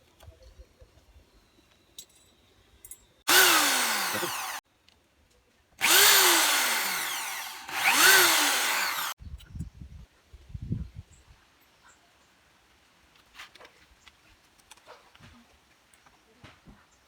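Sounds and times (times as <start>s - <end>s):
electric drill whining: 3.3s - 4.6s, 5.8s - 9.2s.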